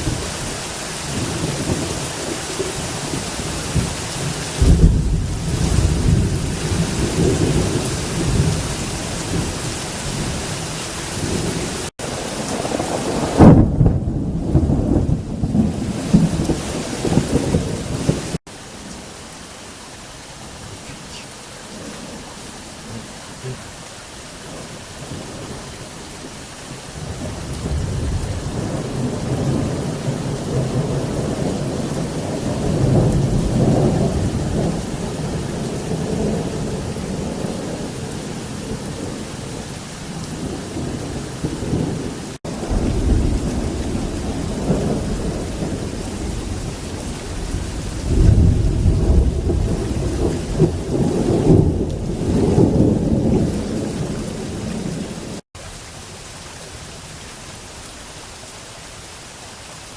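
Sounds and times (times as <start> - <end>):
heavy rain: 0.0 - 59.9
thunder rolling: 1.1 - 18.4, 27.0 - 39.2, 40.3 - 55.4.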